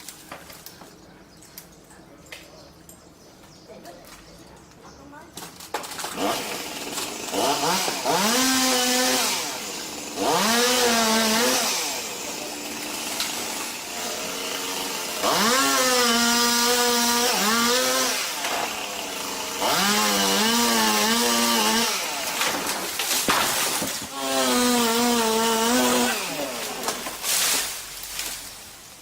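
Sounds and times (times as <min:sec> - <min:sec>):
chainsaw revving: 0:06.1 - 0:27.8.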